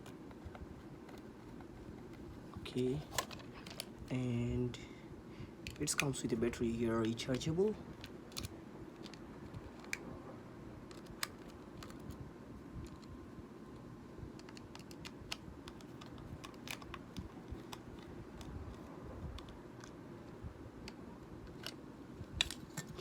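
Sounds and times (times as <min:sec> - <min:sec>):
low steady hum: 0:00.0 - 0:23.0
plastic parts clicking: 0:08.0 - 0:10.0, 0:14.4 - 0:18.8, 0:20.8 - 0:21.8.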